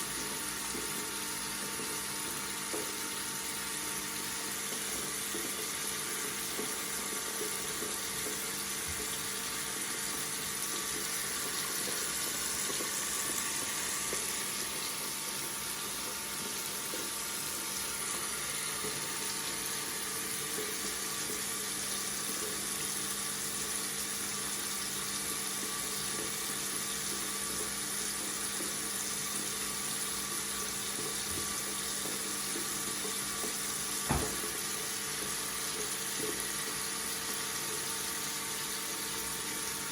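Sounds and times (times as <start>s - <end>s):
water running from a tap: 0.0s - 39.9s.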